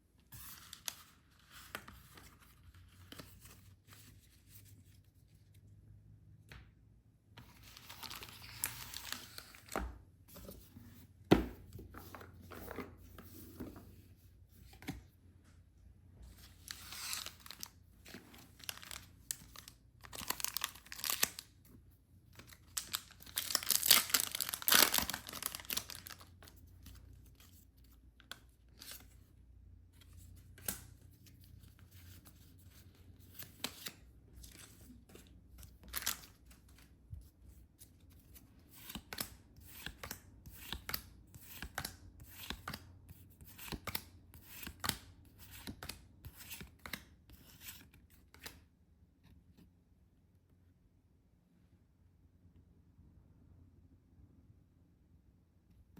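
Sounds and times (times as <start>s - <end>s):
packaging tearing and crinkling: 22.7s - 26.2s.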